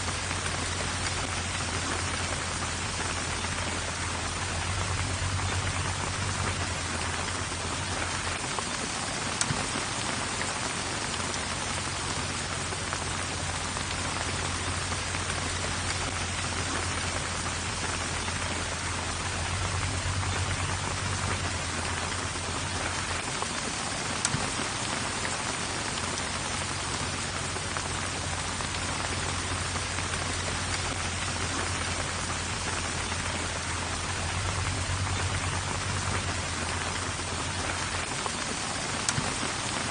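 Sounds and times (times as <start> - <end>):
heavy rainfall: 0.0 - 39.9.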